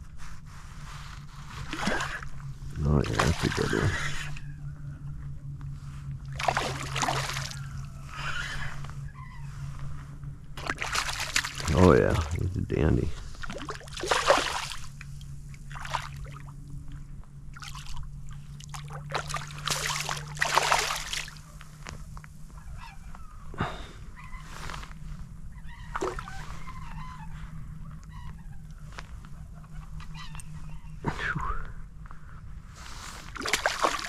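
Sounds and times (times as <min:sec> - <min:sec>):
fish splashing in water: 0:03.0 - 0:04.1, 0:06.4 - 0:07.6, 0:10.6 - 0:12.4, 0:13.4 - 0:15.0, 0:15.7 - 0:16.4, 0:18.6 - 0:21.4, 0:33.3 - 0:34.0.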